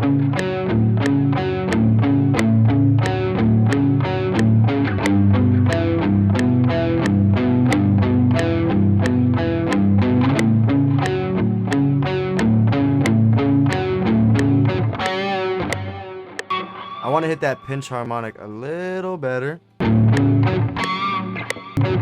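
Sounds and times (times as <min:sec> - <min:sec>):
distorted electric guitar riff: 0:00.0 - 0:22.0
sharp ticking: 0:00.3 - 0:21.9.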